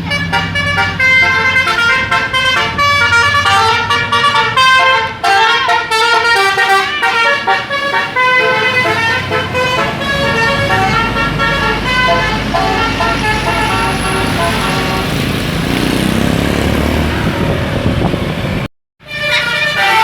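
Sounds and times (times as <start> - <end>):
bus horn playing melody: 0.0 - 18.2, 19.0 - 20.0.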